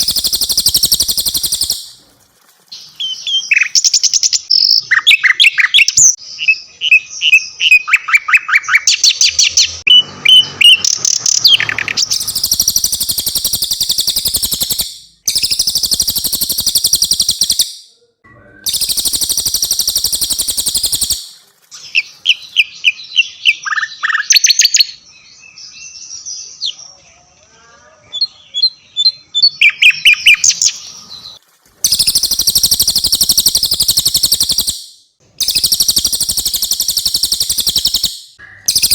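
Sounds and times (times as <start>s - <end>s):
long rapid high bird trills: 0.0s - 2.0s, 11.9s - 17.9s, 18.6s - 22.4s, 31.8s - 38.9s
songbirds chirping and trilling: 0.0s - 2.0s, 2.7s - 38.9s.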